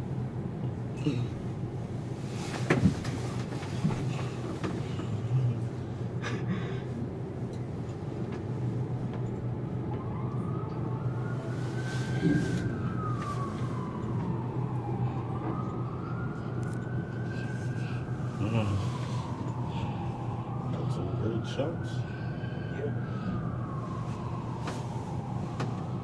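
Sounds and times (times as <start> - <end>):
emergency vehicle siren wailing: 8.8 - 26.0
steady low hum: 11.0 - 26.0.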